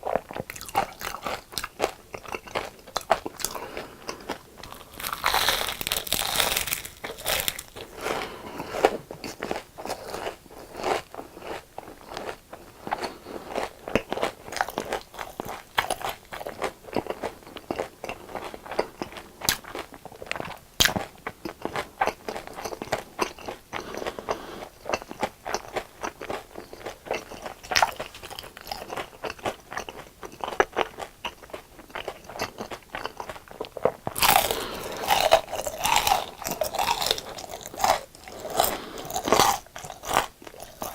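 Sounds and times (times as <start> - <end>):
crunching fried food: 0.0 - 40.9.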